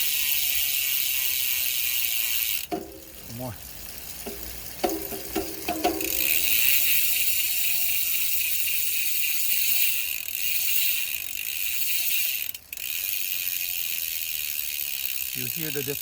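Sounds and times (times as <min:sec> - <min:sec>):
bicycle hub freewheel buzzing: 0:00.0 - 0:16.0
hub clicks: 0:02.2 - 0:07.4.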